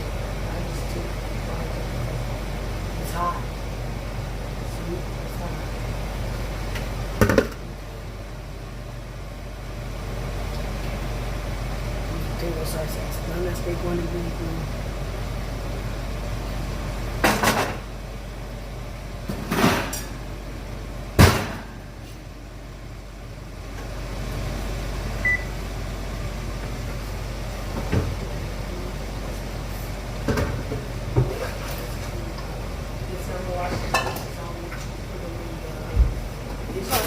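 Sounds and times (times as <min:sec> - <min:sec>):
steady low hum: 0:00.0 - 0:37.0
high beep: 0:25.2 - 0:25.5.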